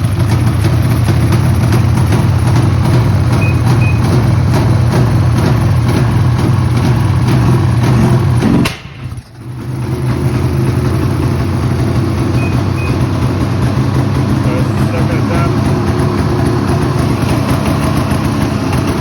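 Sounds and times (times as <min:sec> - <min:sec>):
snowmobile engine running: 0:00.0 - 0:19.0
sharp click: 0:08.6 - 0:09.3.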